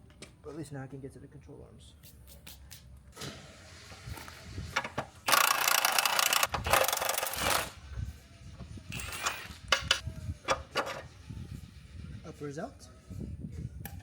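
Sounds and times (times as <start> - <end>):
power tool bursts: 5.2 - 7.8.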